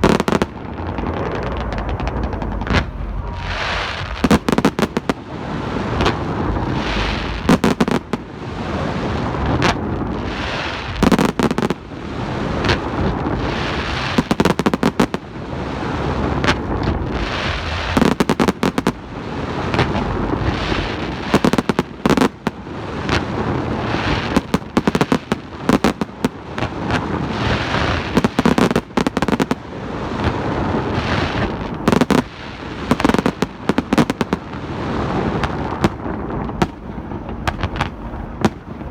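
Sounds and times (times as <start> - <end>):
fireworks bangs: 0.0 - 38.9
fireworks crackling: 0.0 - 38.9.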